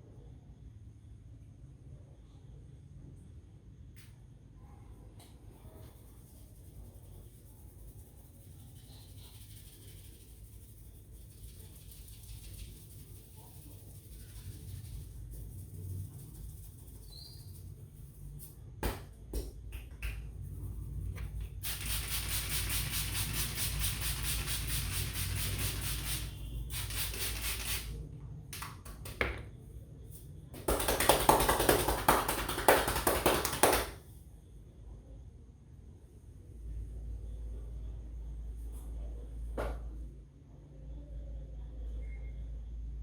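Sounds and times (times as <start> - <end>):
hands slapping on head: 28.5 - 29.4, 30.6 - 34.0.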